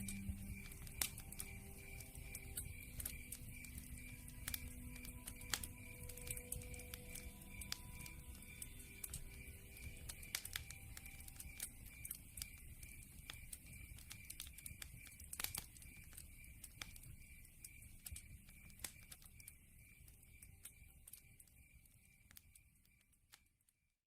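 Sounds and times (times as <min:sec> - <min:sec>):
campfire crackling and popping: 0:00.0 - 0:23.7.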